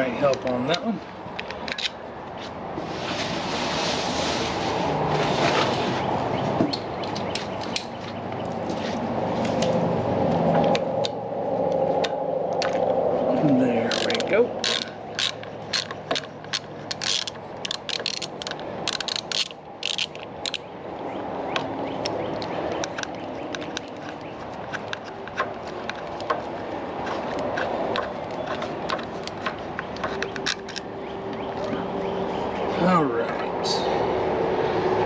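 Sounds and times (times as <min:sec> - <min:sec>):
socket ratchet clicking: 0:13.9 - 0:20.7.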